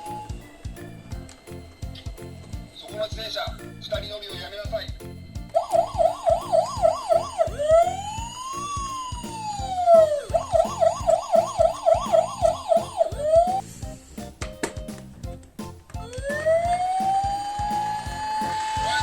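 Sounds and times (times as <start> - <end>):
police siren: 0.0 - 1.3, 5.5 - 13.7, 16.0 - 19.0.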